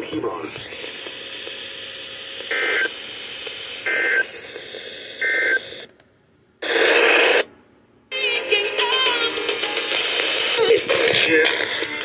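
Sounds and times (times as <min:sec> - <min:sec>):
radio hiss: 0:00.0 - 0:05.8, 0:10.0 - 0:12.0.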